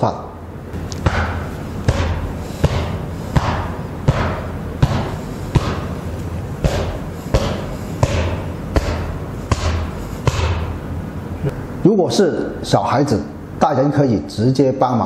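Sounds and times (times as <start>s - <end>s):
hand slapping back: 0.9s - 6.0s.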